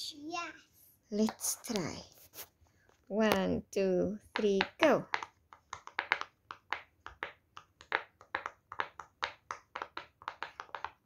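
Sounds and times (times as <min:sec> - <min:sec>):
pop-it fidget toy popping: 0:04.3 - 0:11.0.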